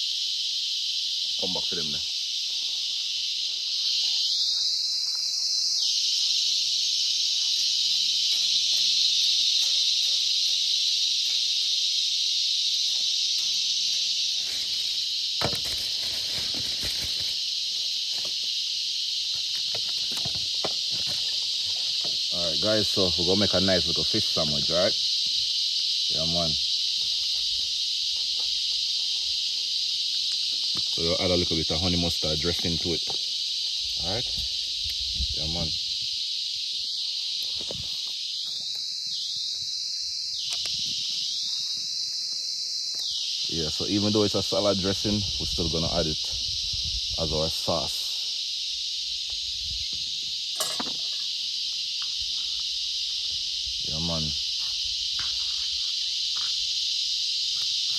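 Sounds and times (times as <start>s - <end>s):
crickets chirping: 0.0s - 57.9s
insects droning: 0.0s - 57.9s.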